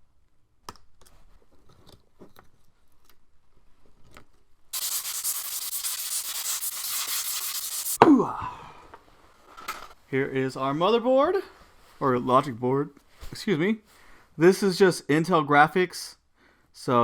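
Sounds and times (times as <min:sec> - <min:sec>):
compressed air hissing: 0:04.8 - 0:08.0.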